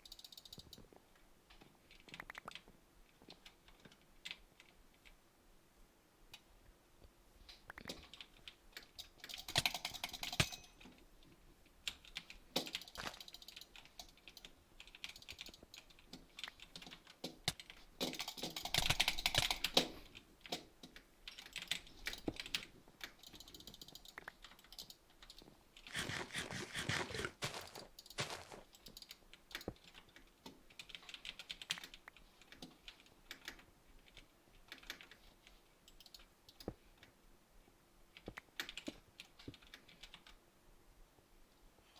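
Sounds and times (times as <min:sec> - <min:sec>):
rapid irregular clicking: 0:11.8 - 0:35.2.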